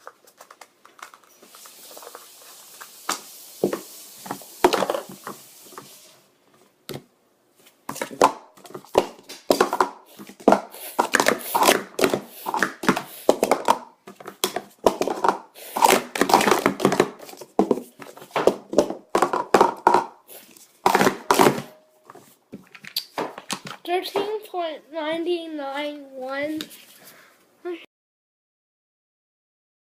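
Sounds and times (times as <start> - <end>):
plastic cups clacking: 0.0 - 5.9, 7.9 - 20.2, 20.8 - 21.8, 22.6 - 24.3.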